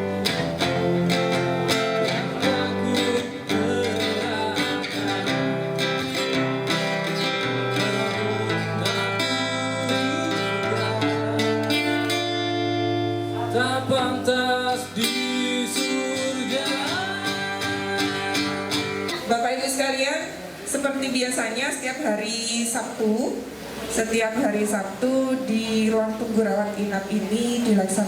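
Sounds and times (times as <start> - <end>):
strummed acoustic guitar: 0.0 - 19.8
acoustic band playing: 0.0 - 28.0.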